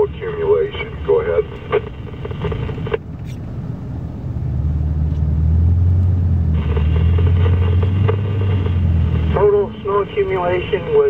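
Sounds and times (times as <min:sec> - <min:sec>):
radio hiss: 0:00.0 - 0:03.5, 0:06.5 - 0:11.0
truck engine rumbling: 0:00.0 - 0:11.0.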